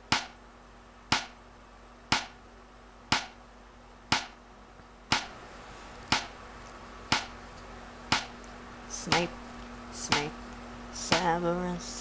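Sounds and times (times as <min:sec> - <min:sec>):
faint steady hum: 0:00.0 - 0:12.0
sharp ticks: 0:01.1 - 0:01.4, 0:02.1 - 0:02.4, 0:03.1 - 0:03.4, 0:04.1 - 0:04.4, 0:05.1 - 0:05.3, 0:06.1 - 0:06.3, 0:07.1 - 0:07.3, 0:08.1 - 0:08.3.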